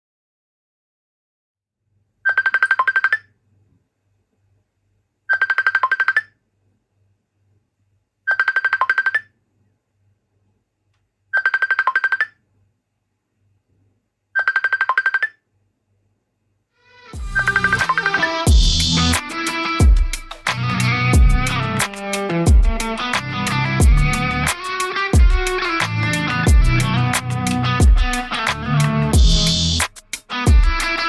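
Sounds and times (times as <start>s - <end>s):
phone ringtone rapid high notes: 2.3s - 3.2s, 8.3s - 9.2s, 11.4s - 12.3s, 14.4s - 15.3s, 17.2s - 18.5s.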